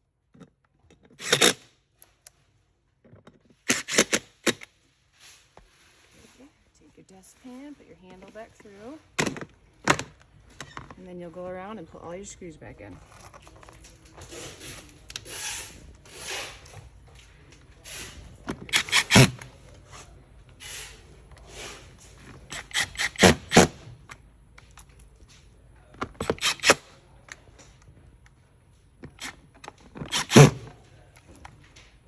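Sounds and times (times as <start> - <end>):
chair parts rubbing and scraping: 0.4 - 1.6, 3.1 - 11.5, 12.8 - 24.1, 25.3 - 26.9, 29.0 - 32.0.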